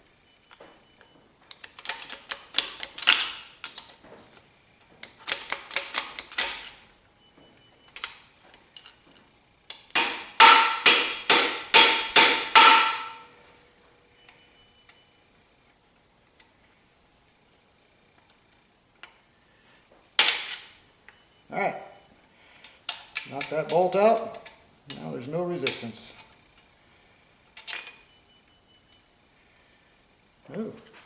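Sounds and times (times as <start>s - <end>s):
hammer striking metal: 10.0s - 13.4s.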